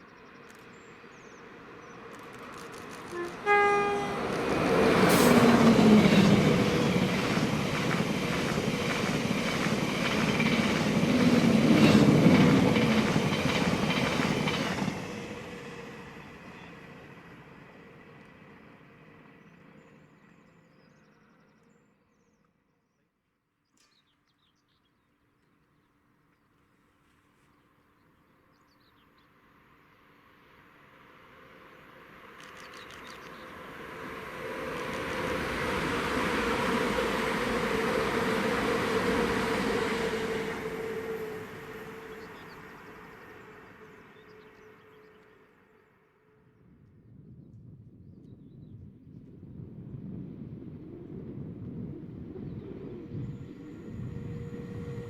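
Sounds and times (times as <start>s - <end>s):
faint train rumble: 0.1s - 21.9s, 26.6s - 55.0s
small birds chirping: 32.4s - 33.6s.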